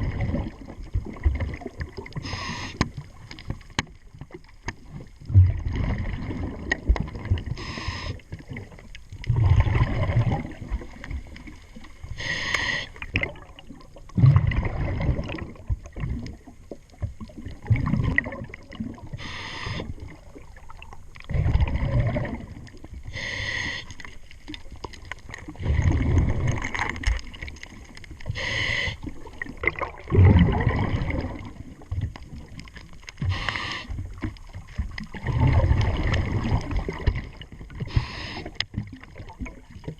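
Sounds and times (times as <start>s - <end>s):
bubbling exhaust underwater: 0.0s - 39.9s
hissing inhale through regulator: 2.2s - 2.9s, 7.6s - 8.3s, 12.1s - 13.1s, 19.1s - 20.0s, 23.0s - 24.1s, 28.2s - 29.2s, 33.2s - 34.0s, 37.8s - 38.6s.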